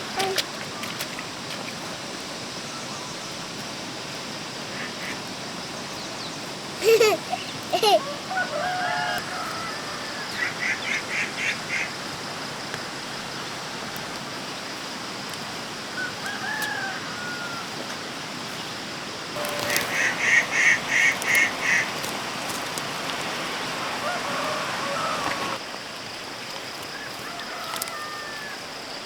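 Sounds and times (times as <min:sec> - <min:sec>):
bird calling: 0:19.4 - 0:25.6
steady hiss: 0:19.4 - 0:25.7.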